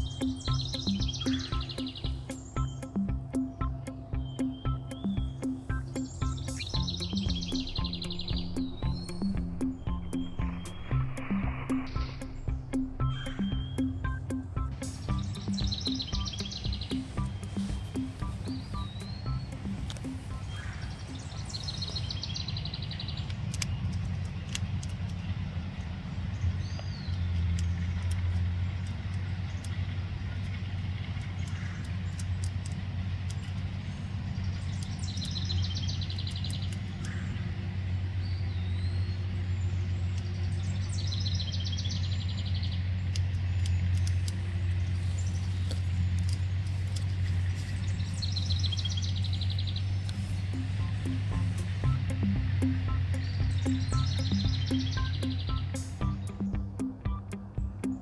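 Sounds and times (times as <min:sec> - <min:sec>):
low engine drone: 0:00.0 - 0:22.4, 0:43.6 - 0:58.0
birds chirping and trilling: 0:00.0 - 0:30.6, 0:31.2 - 0:58.0.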